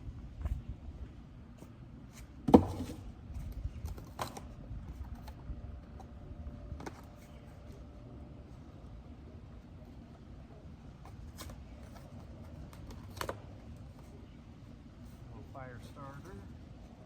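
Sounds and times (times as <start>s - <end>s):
camping gear clicks and rustles: 1.5s - 7.9s, 10.9s - 15.3s.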